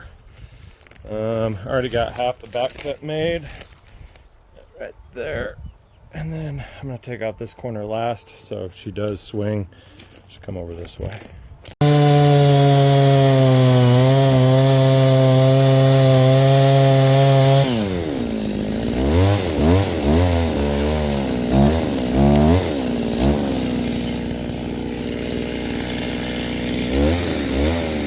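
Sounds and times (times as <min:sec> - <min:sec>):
chainsaw revving and idling: 0:00.6 - 0:04.2, 0:09.9 - 0:10.2, 0:10.8 - 0:28.0.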